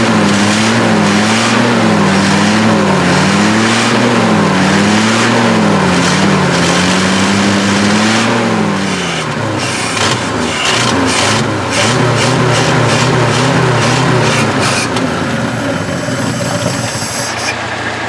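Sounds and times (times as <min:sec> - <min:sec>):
truck engine running unevenly: 0:00.0 - 0:18.0
engine sharp pops: 0:09.2 - 0:18.0.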